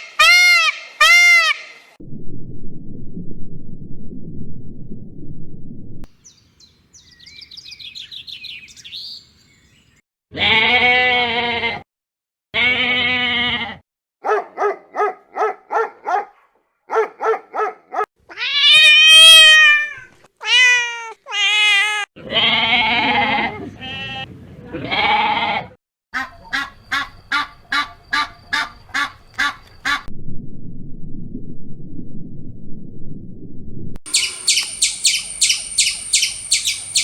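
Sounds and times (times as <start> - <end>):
bleat-like animal calls: 10.3 - 11.8, 12.6 - 13.8, 18.3 - 25.8
high chirping warble: 34.1 - 37.0
loud rising and falling call: 34.1 - 37.0
short pulsed animal calls: 34.1 - 37.0.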